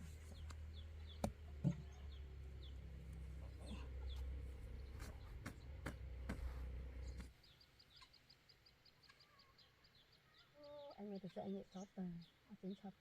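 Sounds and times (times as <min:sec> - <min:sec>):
small bird chirping: 0:07.0 - 0:13.0.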